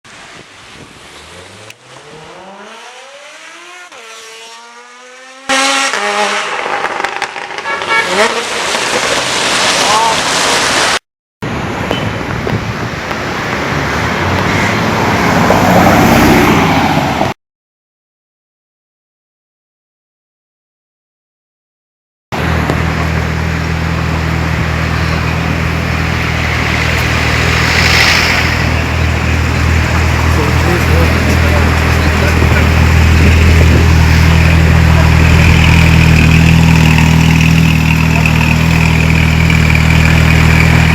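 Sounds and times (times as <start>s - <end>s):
car engine revving: 1.0s - 11.0s, 22.4s - 40.9s.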